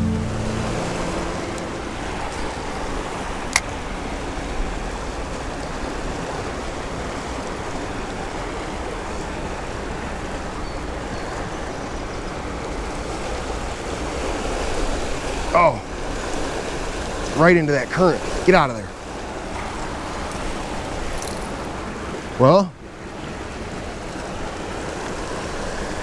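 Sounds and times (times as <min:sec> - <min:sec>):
creek water rushing: 0:00.0 - 0:26.0.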